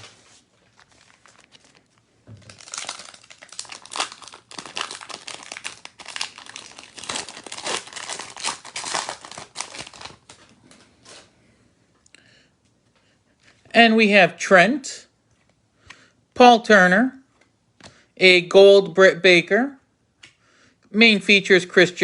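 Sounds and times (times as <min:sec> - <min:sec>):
wrapper tearing and crinkling: 0:00.0 - 0:10.5.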